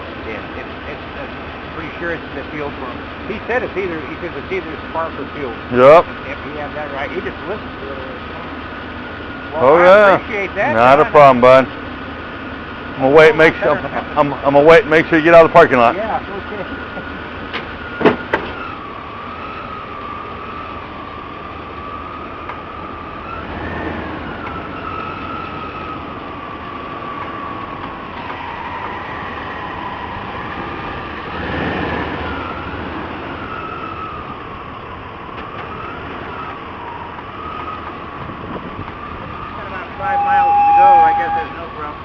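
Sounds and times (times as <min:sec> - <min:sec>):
truck engine idling: 0:00.0 - 0:42.0
high wavering whine: 0:32.0 - 0:42.0.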